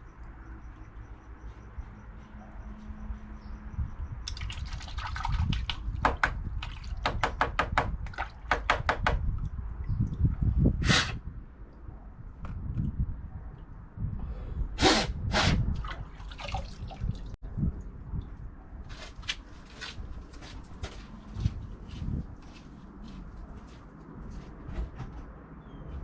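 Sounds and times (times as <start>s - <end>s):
water dripping and splashing: 4.2s - 7.1s, 15.7s - 17.4s.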